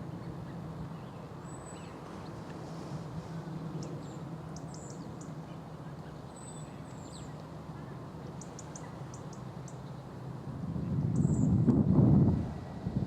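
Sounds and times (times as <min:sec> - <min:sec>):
small birds calling: 0:03.8 - 0:10.1.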